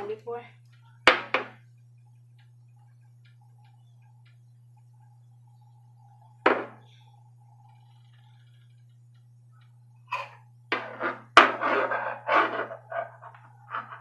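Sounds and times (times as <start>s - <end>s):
steady low hum: 0.0s - 14.0s
faint scattered clicks: 1.8s - 5.6s.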